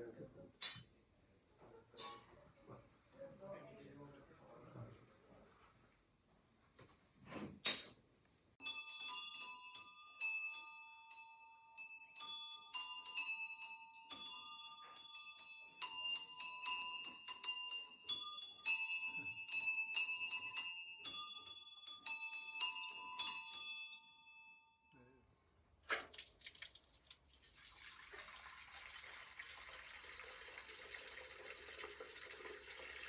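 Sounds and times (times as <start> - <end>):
bells ringing: 8.6 - 24.9.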